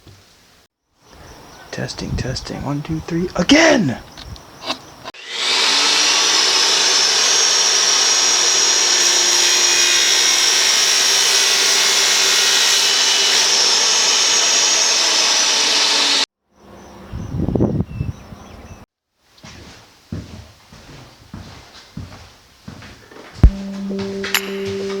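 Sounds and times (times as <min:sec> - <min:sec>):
power tool running: 0:05.2 - 0:16.3.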